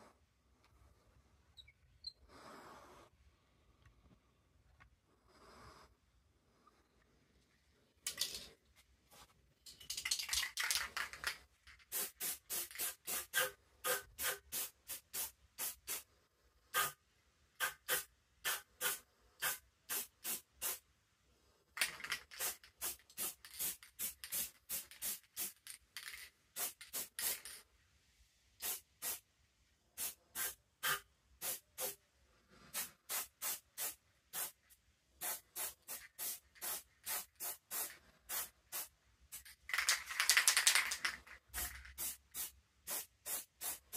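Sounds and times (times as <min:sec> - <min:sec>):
spray paint can hissing: 0:11.8 - 0:16.0, 0:16.8 - 0:17.0, 0:17.6 - 0:20.8, 0:21.8 - 0:27.6, 0:28.6 - 0:29.2, 0:30.0 - 0:32.0, 0:32.8 - 0:34.6, 0:35.2 - 0:43.9.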